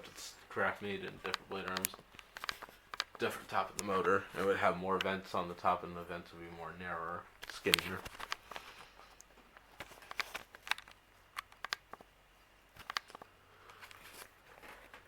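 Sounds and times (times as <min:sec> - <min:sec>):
faint low hum: 0:00.0 - 0:15.0
light handling clicks and taps: 0:01.0 - 0:05.2, 0:07.4 - 0:12.1.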